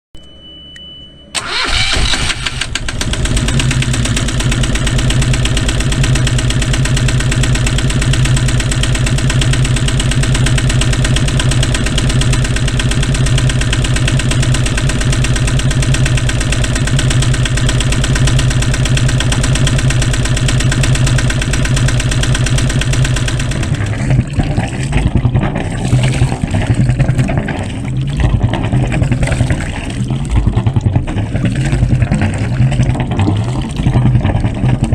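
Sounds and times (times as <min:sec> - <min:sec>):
high beep: 0:00.2 - 0:01.4
boat engine cranking and idling: 0:01.3 - 0:34.9
water splashing from exhaust: 0:01.4 - 0:34.9.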